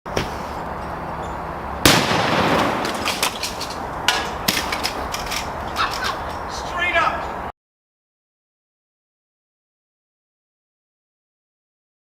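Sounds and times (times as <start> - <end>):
loud firework bang: 1.8 - 3.2
sharp crackling pops: 1.8 - 6.2.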